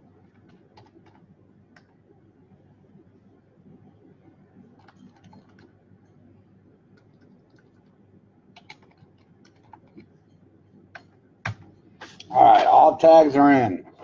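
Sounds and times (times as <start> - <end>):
low room hum: 0.0 - 14.0
keyboard typing: 0.2 - 2.0, 4.6 - 5.8, 6.9 - 10.2, 10.9 - 11.8.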